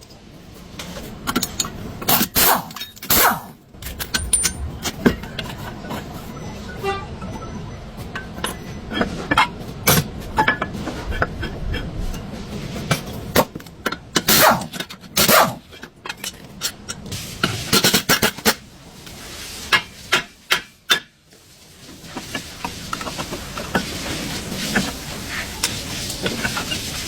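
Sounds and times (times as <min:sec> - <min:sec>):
tools scraping metal: 0:01.3 - 0:06.1, 0:13.8 - 0:18.6, 0:22.1 - 0:27.0.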